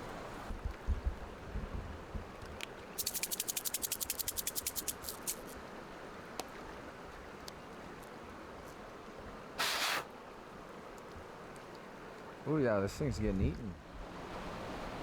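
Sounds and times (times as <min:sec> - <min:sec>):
creek rushing: 0:03.0 - 0:07.0.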